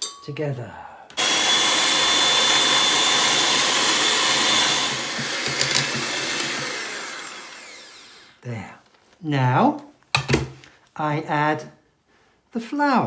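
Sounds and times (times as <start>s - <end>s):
electric mixer running: 1.2s - 8.4s.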